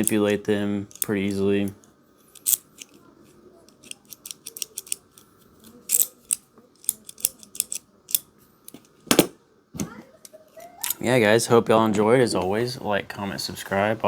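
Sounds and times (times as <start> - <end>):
pliers clicking and snapping: 3.7 - 5.2, 5.9 - 8.9.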